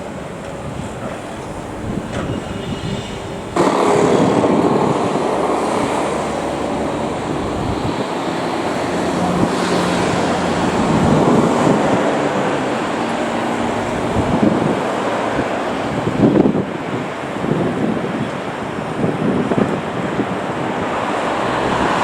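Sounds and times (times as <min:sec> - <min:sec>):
excavator engine running: 0:00.0 - 0:17.4.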